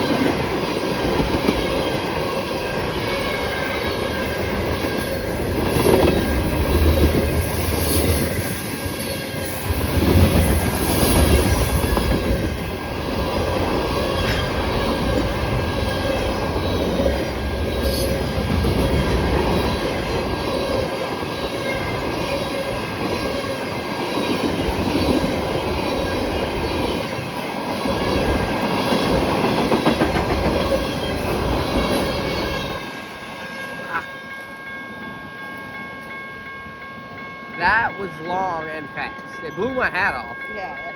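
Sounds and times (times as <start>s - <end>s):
train wheel squeal: 0.0s - 36.0s
train wheels clattering over rail joints: 27.9s - 32.7s.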